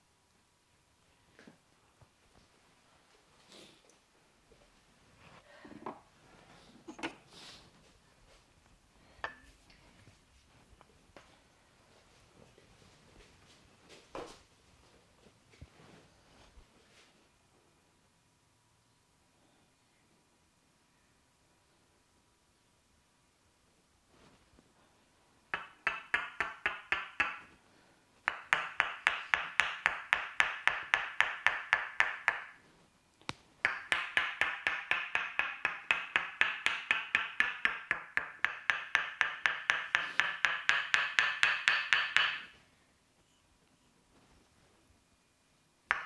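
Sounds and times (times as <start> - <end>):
wooden mallet tapping wooden wedge: 25.5 - 27.6, 28.2 - 32.6, 33.6 - 42.6.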